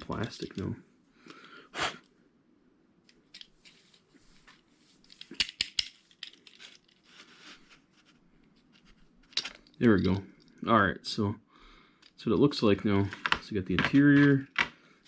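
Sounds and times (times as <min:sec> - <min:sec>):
toy car parts clicking and scraping: 0:05.0 - 0:07.3.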